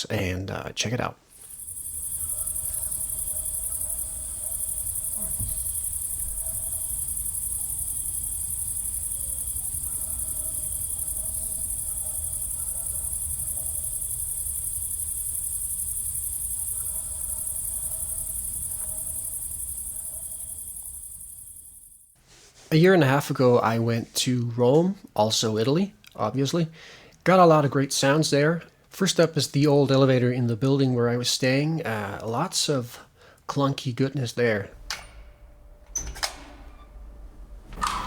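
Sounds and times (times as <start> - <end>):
crickets chirping: 1.3 - 22.2, 34.7 - 38.0
distant dogs barking: 1.4 - 21.8.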